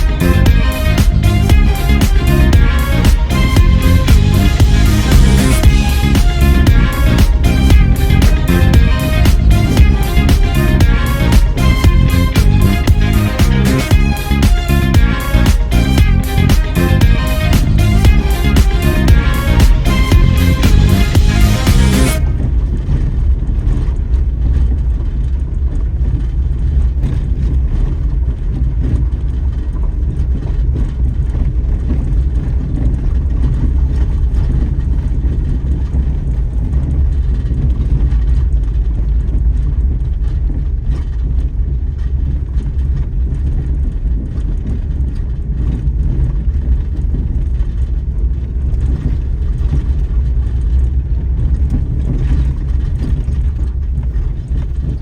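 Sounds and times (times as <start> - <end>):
car engine and tyres rumbling: 0.0 - 55.0.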